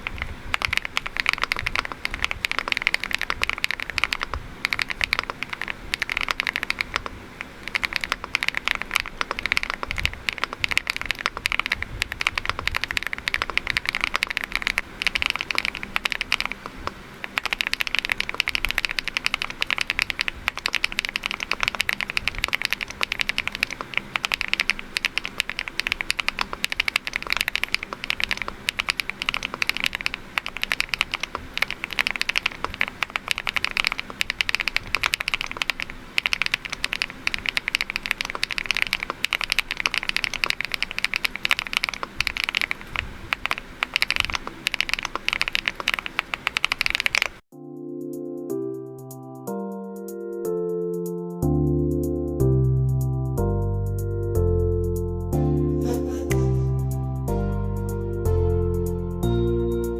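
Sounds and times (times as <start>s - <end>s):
mechanical keyboard typing: 0.0s - 47.4s.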